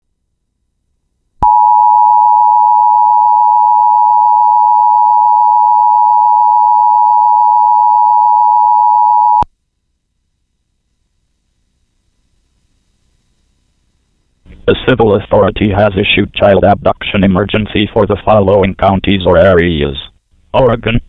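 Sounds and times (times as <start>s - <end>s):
two-tone alarm: 1.4s - 9.4s.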